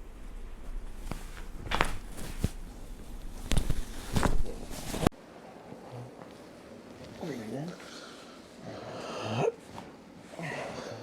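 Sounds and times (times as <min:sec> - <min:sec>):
knocks and taps of bodies moving: 0:00.6 - 0:05.1.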